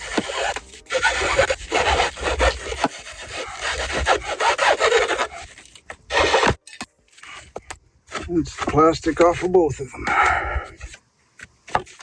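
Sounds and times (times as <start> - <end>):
plastic scraping against metal: 0.0 - 9.6.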